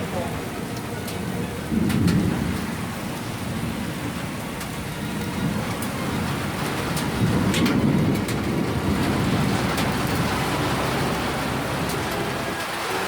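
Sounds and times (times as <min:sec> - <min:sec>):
hailstones ticking: 0:00.0 - 0:13.0
heavy rain pouring: 0:00.0 - 0:13.0.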